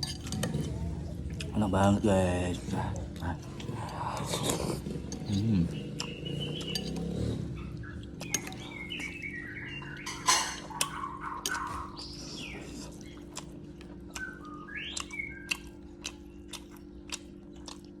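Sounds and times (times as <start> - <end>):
spoon clinking on a bowl: 0.0 - 0.6, 10.0 - 11.6
slurping: 0.0 - 9.6
steady low hum: 0.0 - 18.0
chirping whistle-like tones: 5.7 - 13.2, 14.1 - 16.5.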